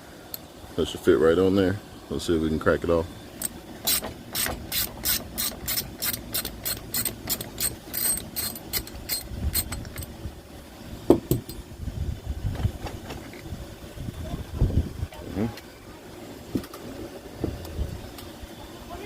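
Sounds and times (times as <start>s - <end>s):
socket wrench ratchet clicking: 3.4s - 10.1s.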